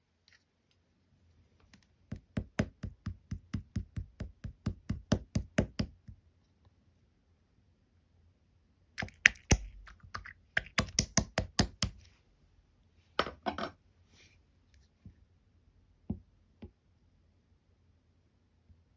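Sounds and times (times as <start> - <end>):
slime clicking and popping: 9.0 - 12.0.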